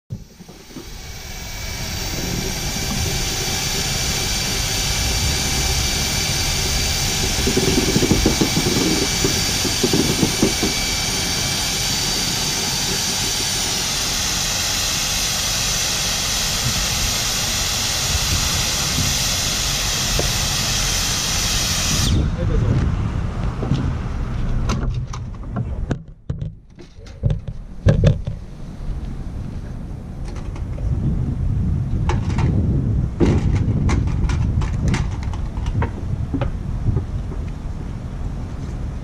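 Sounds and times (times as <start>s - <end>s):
machine running with hiss: 0.1s - 22.5s.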